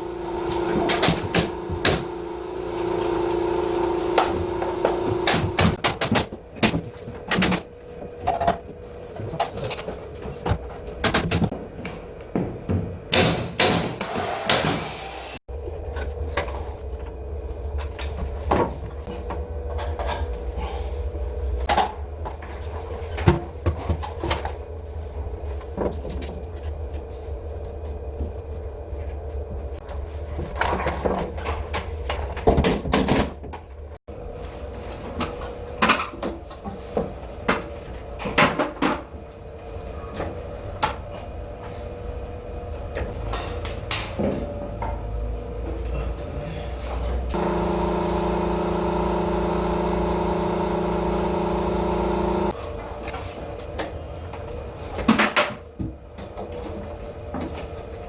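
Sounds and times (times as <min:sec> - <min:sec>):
steady low hum: 0:47.3 - 0:52.6
loud noisy bursts: 0:47.4 - 0:52.5.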